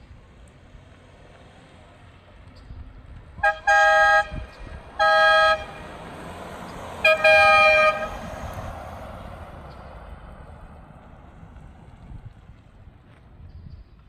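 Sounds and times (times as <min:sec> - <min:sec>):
dual-tone car air horn blasts: 0:03.4 - 0:06.0, 0:06.9 - 0:08.6.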